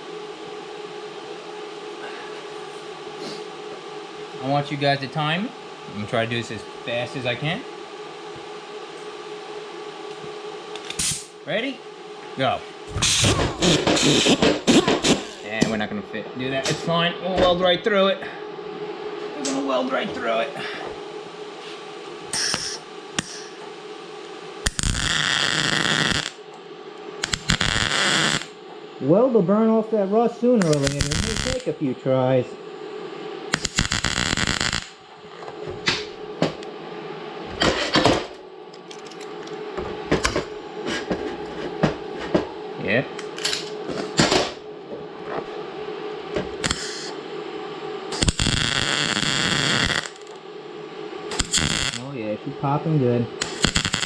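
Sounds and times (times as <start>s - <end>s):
welder arc: 10.7s - 11.4s, 12.9s - 15.7s, 22.2s - 26.6s, 27.2s - 28.6s, 30.6s - 31.8s, 33.5s - 35.2s, 46.5s - 47.2s, 48.1s - 50.4s, 51.3s - 54.0s
sharp click: 10.8s - 11.3s.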